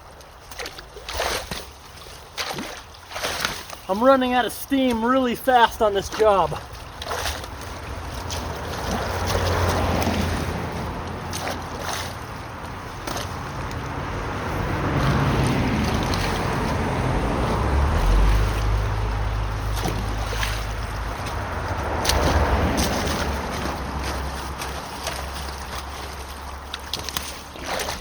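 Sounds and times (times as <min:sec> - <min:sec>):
water sloshing and splashing: 0:00.0 - 0:28.0
steady low rumble: 0:05.3 - 0:26.8.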